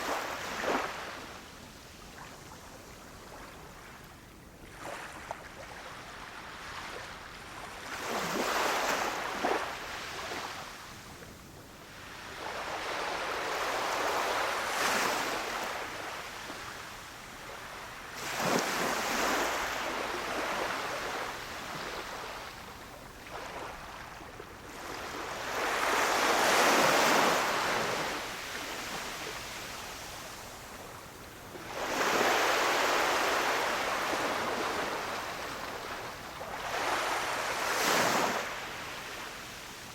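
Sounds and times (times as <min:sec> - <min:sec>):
sea waves breaking on beach: 0:31.6 - 0:39.3.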